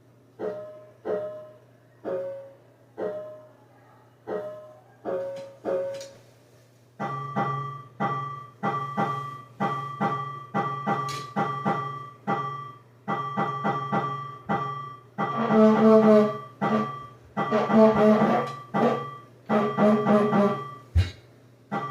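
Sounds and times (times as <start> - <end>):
piano-like keyboard notes: 0.4 - 6.1.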